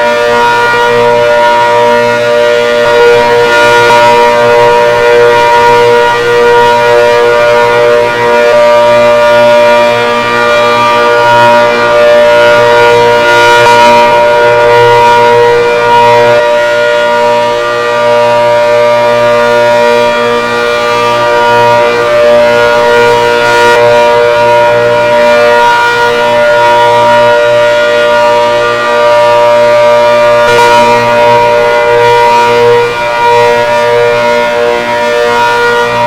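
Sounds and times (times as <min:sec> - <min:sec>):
civil defense siren: 0:00.0 - 0:36.0.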